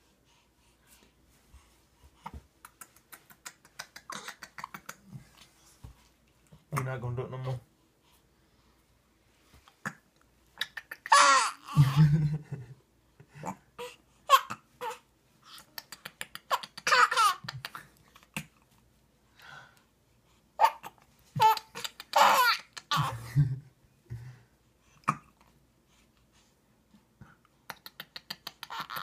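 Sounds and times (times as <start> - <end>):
baby giggling and babbling: 10.6 - 12.0, 16.4 - 17.8, 20.6 - 23.3, 28.2 - 29.0.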